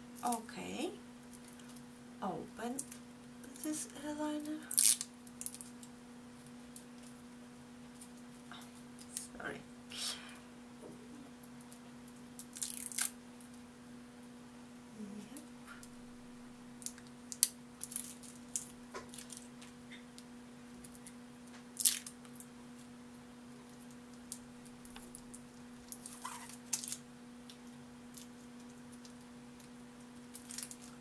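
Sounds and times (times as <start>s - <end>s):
steady low hum: 0.0s - 31.0s
small tearing sounds: 4.6s - 5.9s, 12.4s - 13.2s, 16.8s - 20.0s, 21.8s - 22.9s, 23.7s - 31.0s
packaging crinkling: 4.7s - 5.9s, 12.4s - 13.2s, 16.8s - 19.6s, 21.8s - 22.4s, 24.9s - 27.0s, 28.1s - 31.0s.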